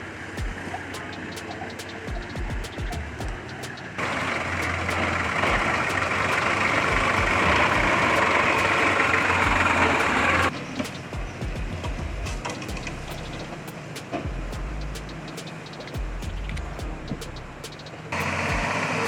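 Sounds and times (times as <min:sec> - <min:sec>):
vehicle engine drone: 0:00.0 - 0:19.0.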